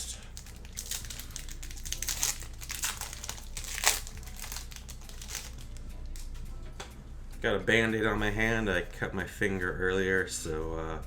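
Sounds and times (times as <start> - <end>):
wrappers tearing and crinkling: 0.0 - 6.3.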